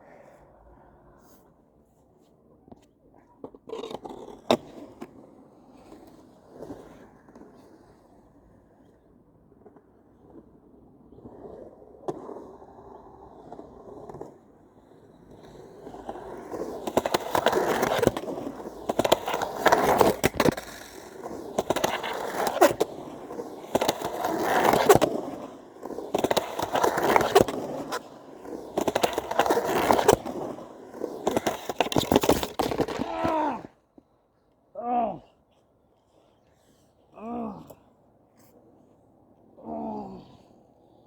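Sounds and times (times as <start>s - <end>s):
skateboard wheels rumbling: 3.3s - 34.2s
skateboard trucks clacking on coping: 11.2s - 33.7s.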